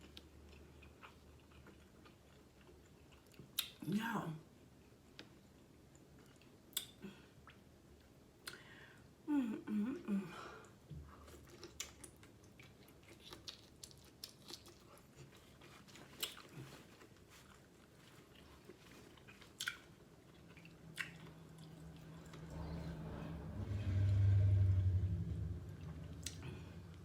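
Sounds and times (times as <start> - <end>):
wet chewing mouth clicks: 19.2 - 21.8.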